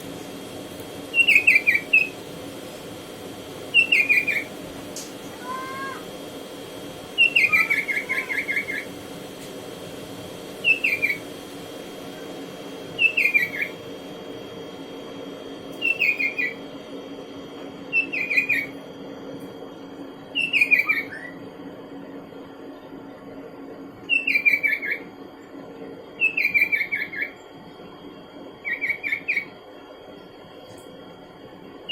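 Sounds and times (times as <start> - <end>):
faint steady hum: 0.0 - 31.9
bird singing whistled notes: 1.1 - 2.2, 3.7 - 4.5, 7.2 - 8.9, 10.6 - 11.2, 13.0 - 13.8, 15.8 - 16.6, 17.9 - 18.8, 20.3 - 21.4, 24.1 - 25.0, 26.2 - 27.4, 28.6 - 29.5.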